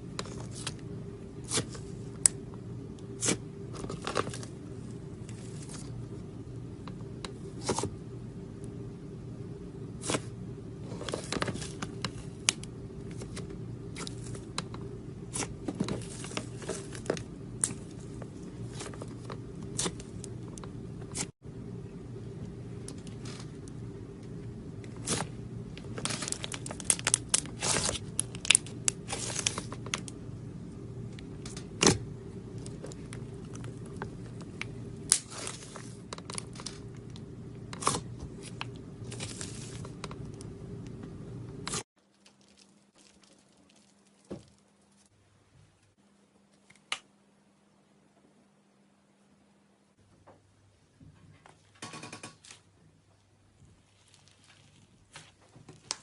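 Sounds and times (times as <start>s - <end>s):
low hum: 0.0s - 41.9s.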